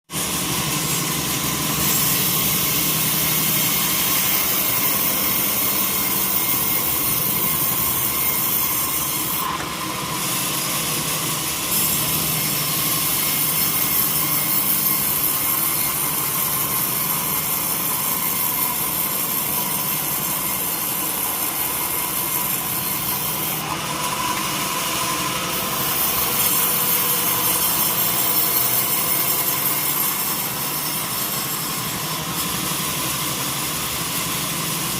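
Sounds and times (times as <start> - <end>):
saw cutting through log: 0.1 - 34.9.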